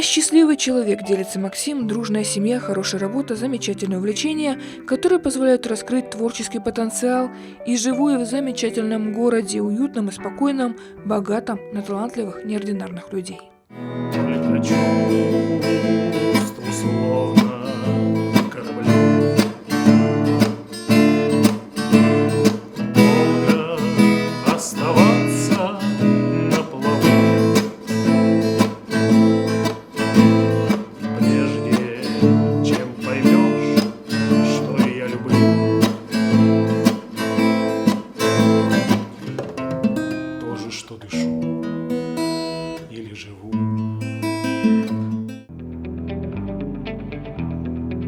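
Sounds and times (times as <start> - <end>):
acoustic guitar strumming: 13.7 - 48.0.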